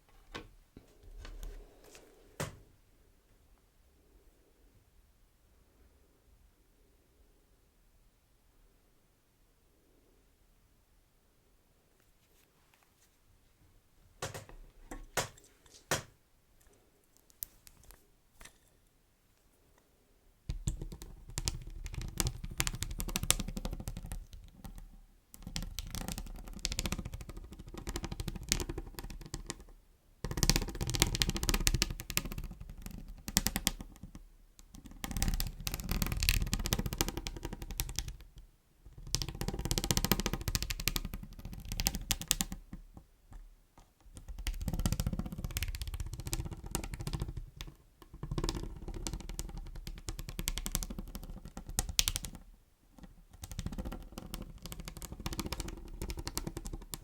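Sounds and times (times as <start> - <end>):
light taps and clicks: 14.2 - 18.6.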